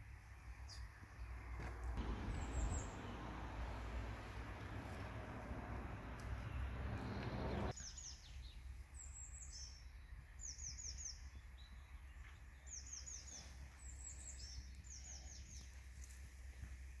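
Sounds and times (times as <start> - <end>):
small songbird chirping: 0.3 - 16.0
faint low rumble: 1.9 - 7.7
rushing noise: 2.0 - 7.7.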